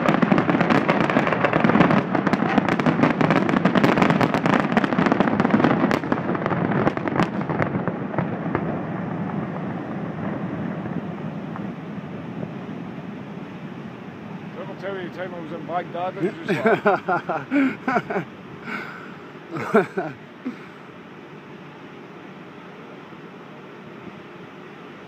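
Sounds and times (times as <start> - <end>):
fireworks crackling bangs: 0.0 - 20.7
fireworks rumble: 0.0 - 25.0.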